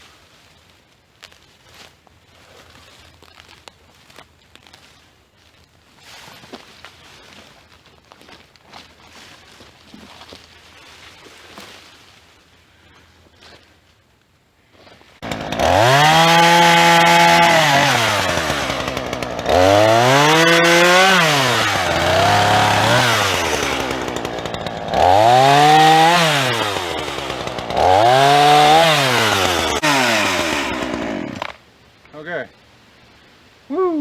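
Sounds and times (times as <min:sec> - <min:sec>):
chainsaw revving and bogging: 0:15.2 - 0:31.6.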